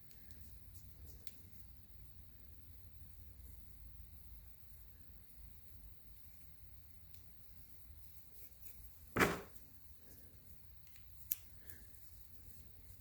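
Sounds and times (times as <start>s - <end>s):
loud metal clunk: 9.2s - 9.5s.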